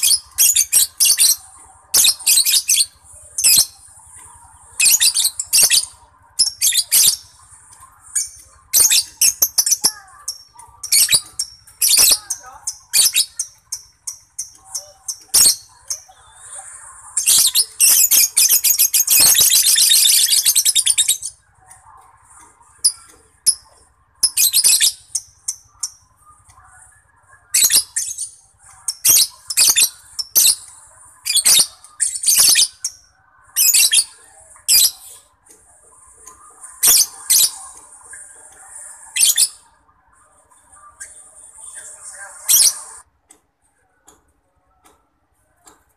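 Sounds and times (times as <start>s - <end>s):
lovebird chirps and squawks: 4.7s - 7.3s, 8.1s - 21.4s, 22.8s - 26.0s, 27.5s - 35.3s, 36.6s - 39.8s, 40.8s - 43.1s.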